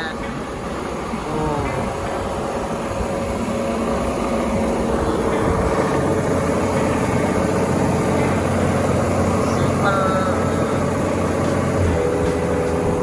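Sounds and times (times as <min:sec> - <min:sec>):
harvester engine running: 0:00.0 - 0:13.0.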